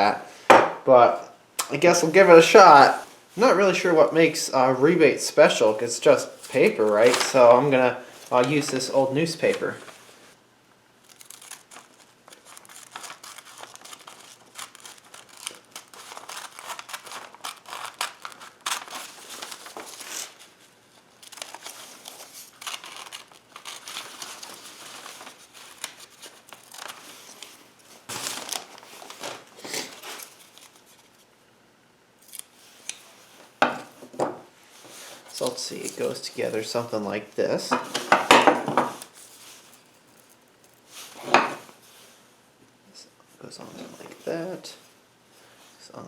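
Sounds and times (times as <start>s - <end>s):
newspaper rustling and crinkling: 5.4s - 10.3s, 11.0s - 31.3s, 34.7s - 42.2s
paper ripping: 6.2s - 10.0s, 11.0s - 20.6s, 21.2s - 31.2s
scissors snipping paper: 11.0s - 20.4s, 21.2s - 27.0s, 32.2s - 33.0s.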